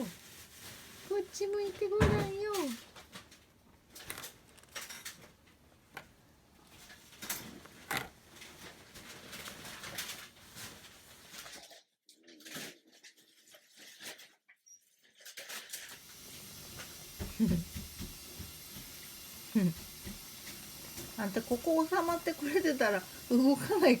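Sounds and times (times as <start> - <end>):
brush rustling through fur: 0.0 - 2.8, 8.6 - 11.5.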